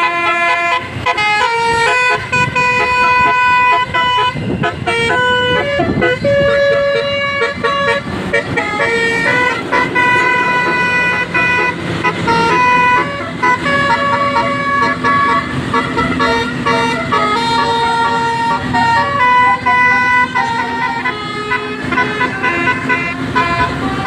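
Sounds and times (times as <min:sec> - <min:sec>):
bus horns playing a tune: 0:00.0 - 0:24.0.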